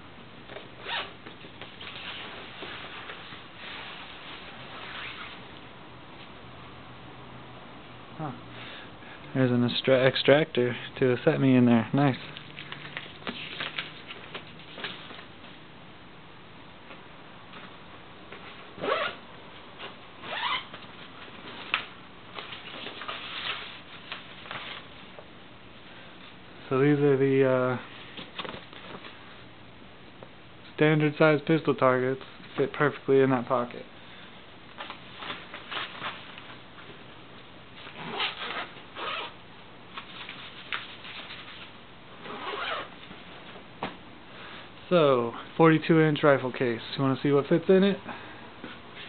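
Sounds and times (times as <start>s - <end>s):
zipper pulled: 0.8s - 1.2s, 1.8s - 5.4s, 18.8s - 19.2s, 37.8s - 39.4s, 42.2s - 42.9s
rustling handling noise: 11.9s - 15.6s, 16.9s - 25.3s, 27.8s - 29.5s, 34.6s - 39.3s, 39.9s - 44.8s.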